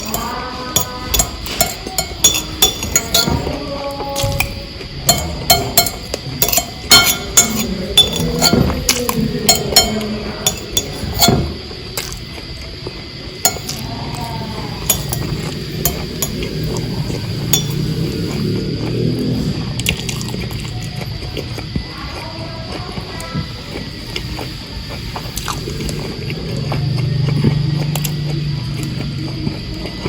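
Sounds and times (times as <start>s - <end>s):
cutlery clinking on a plate: 0.0s - 3.6s, 4.2s - 12.2s, 13.4s - 13.8s, 14.8s - 16.8s, 17.4s - 17.9s.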